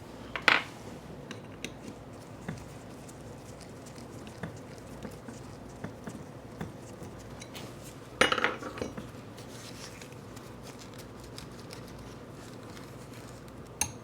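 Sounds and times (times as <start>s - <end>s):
metal parts clattering on workbench: 8.2s - 8.8s.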